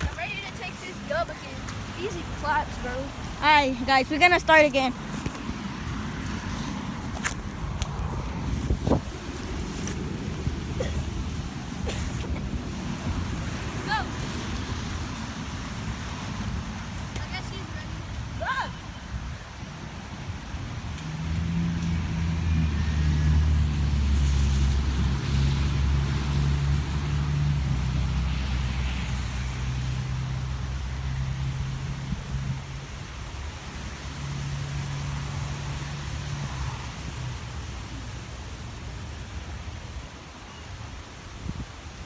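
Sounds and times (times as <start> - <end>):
vehicle engine humming: 0.0 - 17.8.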